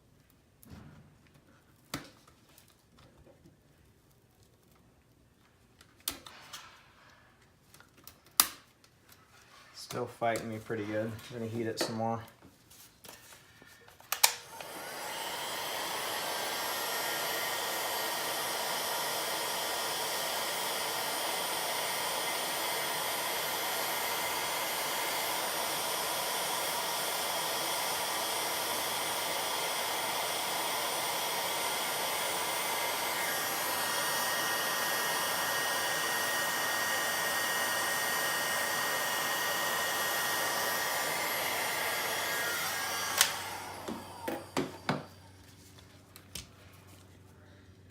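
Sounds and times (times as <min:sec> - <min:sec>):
heat gun blowing air: 0:14.0 - 0:45.4
heat gun switch click: 0:14.1 - 0:14.7, 0:43.0 - 0:44.7.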